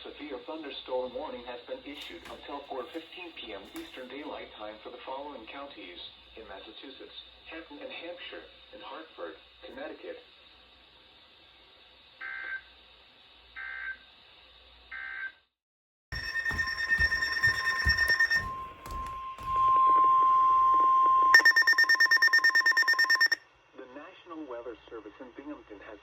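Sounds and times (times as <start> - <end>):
electronic data chirps: 16.2 - 19.2, 21.4 - 23.4
fast-pulsing beep: 16.2 - 19.2, 21.4 - 23.4
steady high alert tone: 16.2 - 19.7, 21.4 - 23.4.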